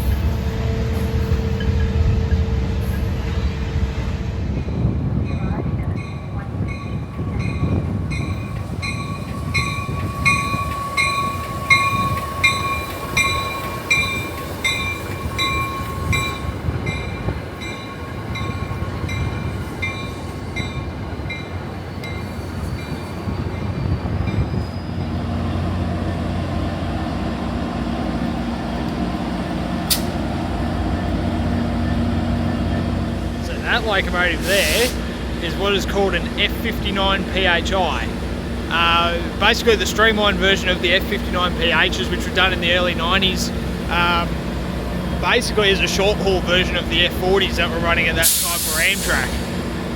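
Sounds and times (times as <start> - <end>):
locomotive engine humming: 0.0 - 49.9
train bell ringing: 4.8 - 25.0, 30.0 - 34.3.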